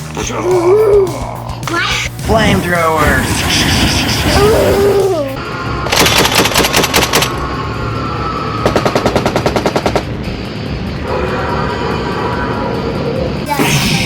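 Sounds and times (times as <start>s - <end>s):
machine-gun fire: 5.9s - 7.4s, 8.6s - 10.2s.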